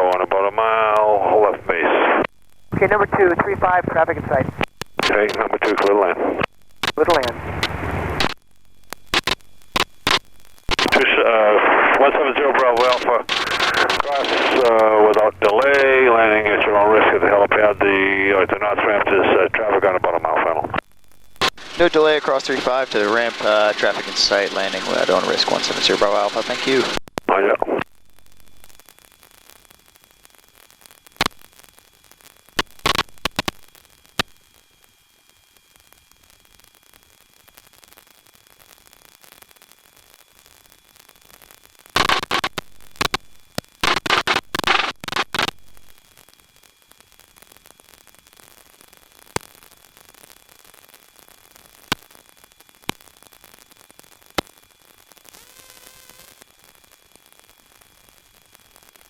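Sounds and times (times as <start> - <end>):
radio clicks: 0.0 - 21.9, 31.2 - 31.4, 32.6 - 34.4, 42.0 - 46.0
faint high whine: 0.0 - 59.0
loud crackling bursts: 0.0 - 59.0
radio static hiss: 0.0 - 59.0.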